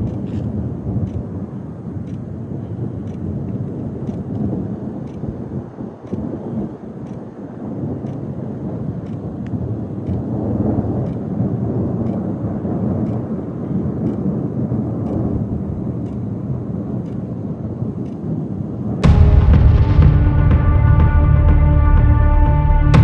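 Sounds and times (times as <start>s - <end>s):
low rolling thunder: 19.0s - 23.0s
music: 19.0s - 23.0s.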